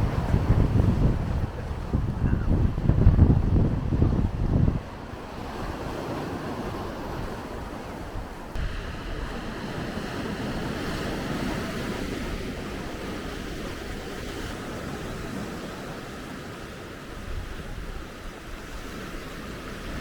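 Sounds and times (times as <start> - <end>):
sea surf washing onto shore: 0.0 - 20.0
wind buffeting microphone: 0.0 - 20.0.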